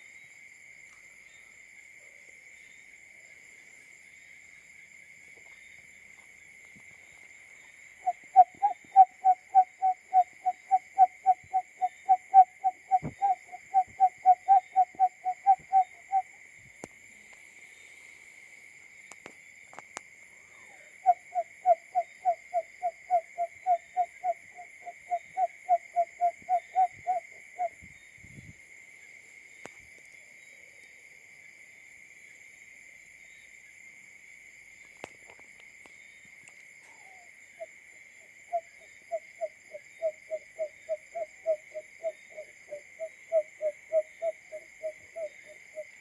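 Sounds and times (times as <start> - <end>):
bird hooting call: 8.0 - 16.3, 20.6 - 27.8, 38.5 - 45.9.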